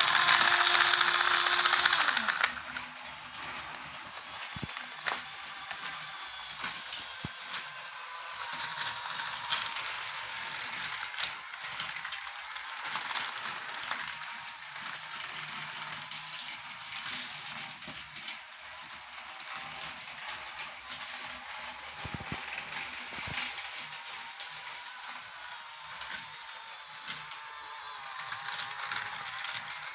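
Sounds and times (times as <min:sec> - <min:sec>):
gears grinding: 0:00.0 - 0:29.9
model train motor whirring: 0:00.0 - 0:29.9.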